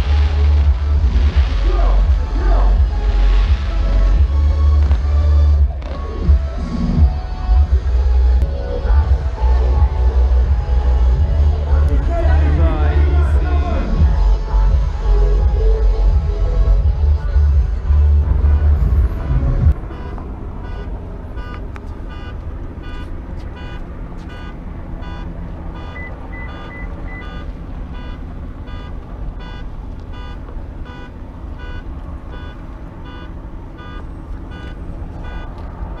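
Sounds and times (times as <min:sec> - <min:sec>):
steady low rumble: 0:00.0 - 0:36.0
higher beeps: 0:19.8 - 0:35.5
electronic beeping: 0:19.8 - 0:36.0.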